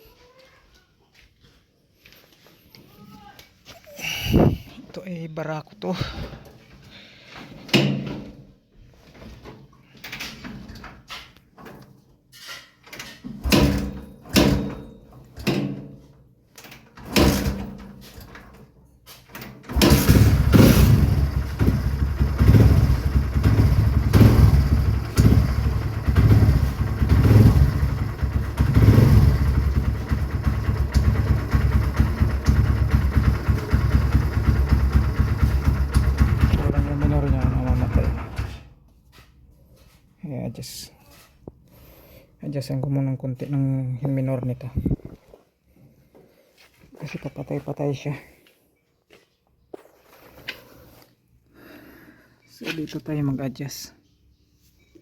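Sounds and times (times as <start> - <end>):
motorcycle engine starting and idling: 13.0 - 39.2.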